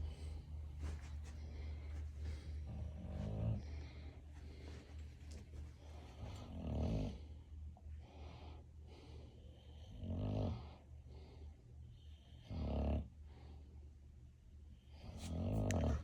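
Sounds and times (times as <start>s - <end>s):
dog breathing softly: 0.0s - 7.2s
dog snoring: 6.1s - 7.3s, 9.7s - 10.8s, 12.0s - 13.2s, 15.0s - 16.0s.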